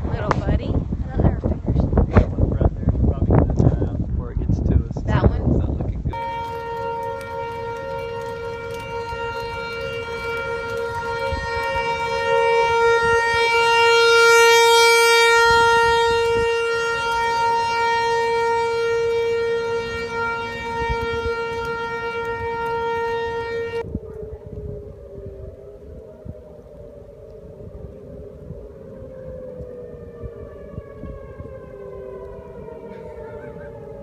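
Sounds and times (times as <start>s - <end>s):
low rumble: 0.0s - 13.8s
tornado warning siren: 6.1s - 34.0s.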